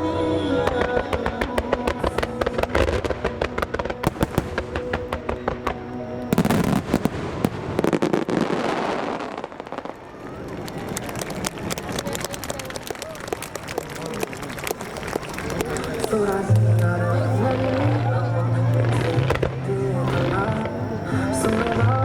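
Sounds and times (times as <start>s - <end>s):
music: 0.0s - 9.4s, 15.8s - 22.0s
fireworks crackling and popping: 0.0s - 22.0s.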